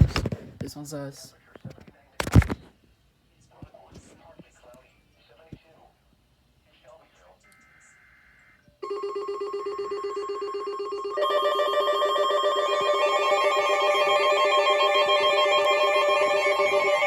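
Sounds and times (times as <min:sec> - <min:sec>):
loud alert tone: 0:08.8 - 0:17.0
multi-tone alarm: 0:08.8 - 0:17.0.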